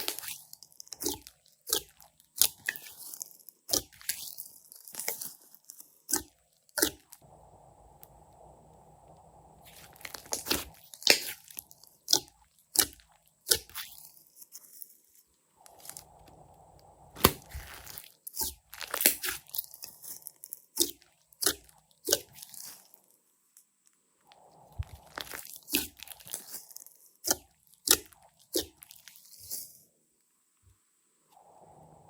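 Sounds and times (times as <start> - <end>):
slime squeezed by hand: 9.7 - 14.1, 17.1 - 20.2.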